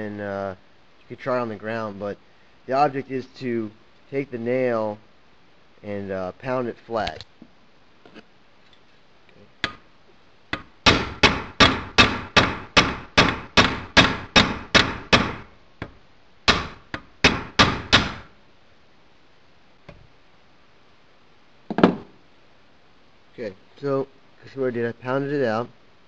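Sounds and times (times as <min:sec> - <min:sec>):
hammer blows on metal vise: 0:10.5 - 0:18.3.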